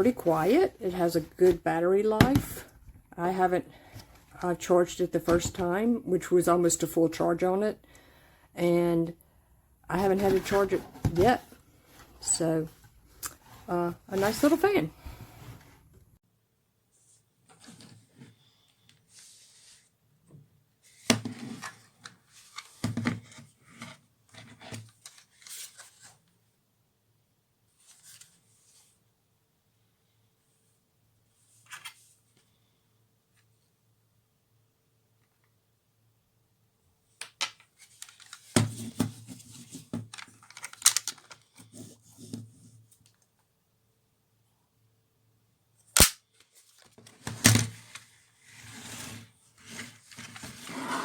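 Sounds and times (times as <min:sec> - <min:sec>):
handling clicks and rustling: 0:39.7 - 0:41.6.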